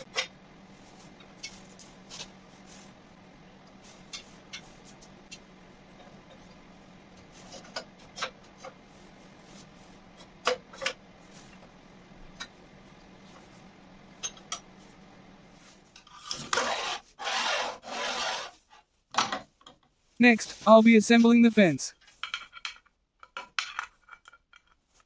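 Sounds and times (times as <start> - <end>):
rubbing scrapes: 16.3 - 18.8.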